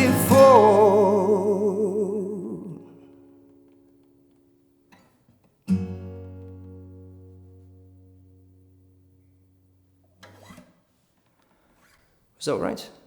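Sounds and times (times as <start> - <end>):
person singing with vibrato: 0.0 - 3.0
acoustic guitar chord ringing: 0.0 - 5.0, 5.6 - 10.0.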